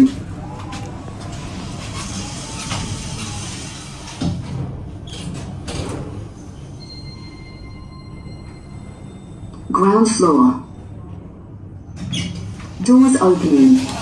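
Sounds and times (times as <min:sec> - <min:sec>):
lift doors sliding shut: 0:00.0 - 0:07.4, 0:11.9 - 0:14.0
lift low rumble: 0:00.0 - 0:14.0.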